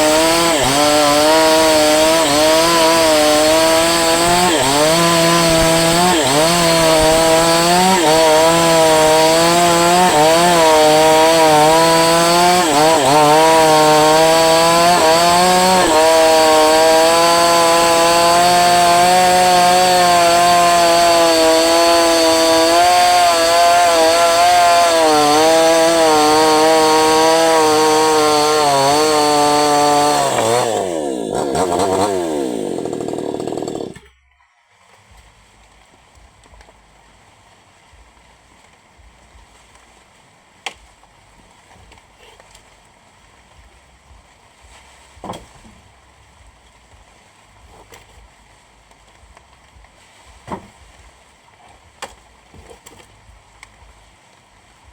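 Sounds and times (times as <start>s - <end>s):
chainsaw running at high revs: 0.0s - 34.1s.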